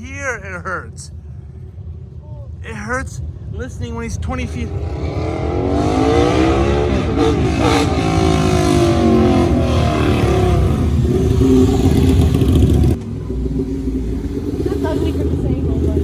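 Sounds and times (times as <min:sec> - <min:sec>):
motorcycle engine revving: 0:04.0 - 0:16.0.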